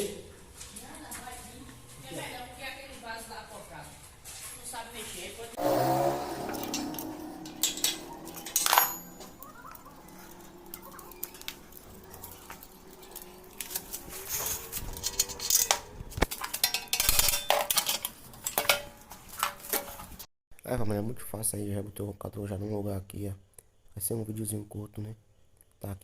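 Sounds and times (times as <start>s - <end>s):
metal tools clinking and knocking: 6.3s - 20.1s.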